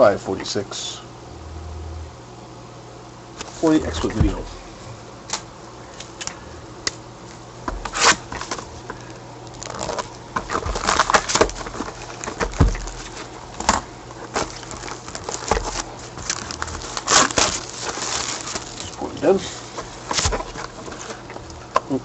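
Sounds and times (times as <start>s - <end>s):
plastic shrink-wrap crinkling and tearing: 7.9s - 21.3s.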